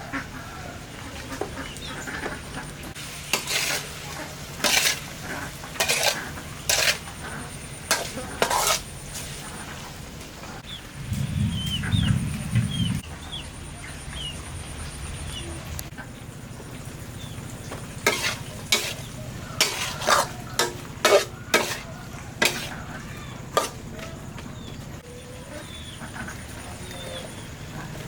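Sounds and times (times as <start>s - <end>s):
food frying in a pan: 2.9s - 10.4s, 16.8s - 22.9s
low rumble: 10.6s - 18.0s
utensil knocking against pan: 19.6s - 22.7s.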